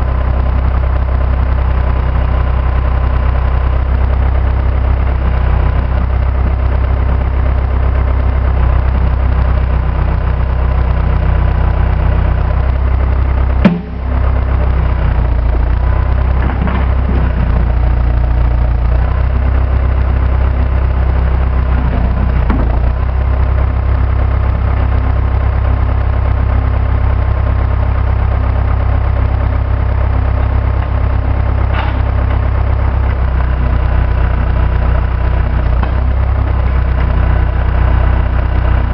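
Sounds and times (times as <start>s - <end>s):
diesel engine running: 0.0s - 38.9s
sharp loud knock: 13.7s - 14.2s
faint clunks: 31.7s - 32.1s.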